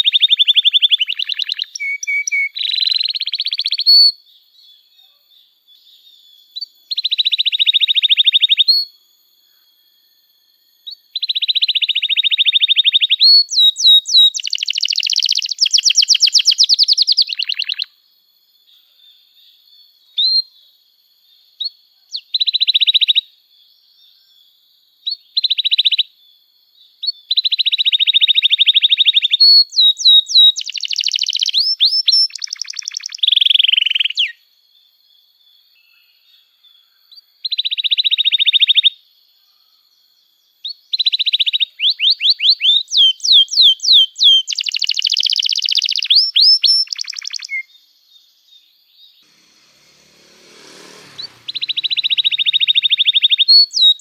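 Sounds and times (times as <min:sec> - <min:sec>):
canary singing: 0:00.0 - 0:04.2, 0:11.1 - 0:17.9, 0:27.0 - 0:34.4, 0:40.7 - 0:47.7, 0:49.2 - 0:54.0.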